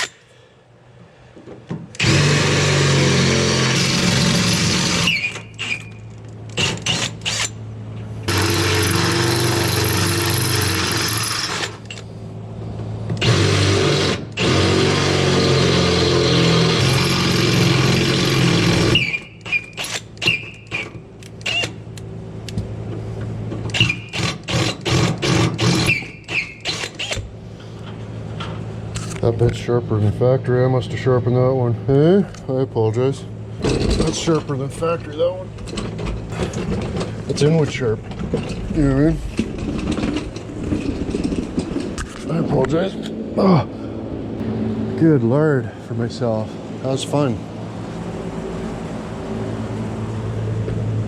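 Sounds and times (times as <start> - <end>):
electric drill boring: 2.0 - 5.9, 8.3 - 11.8, 13.2 - 21.7, 23.7 - 27.2
high squeaks: 5.0 - 7.5, 18.9 - 21.8, 25.8 - 27.2.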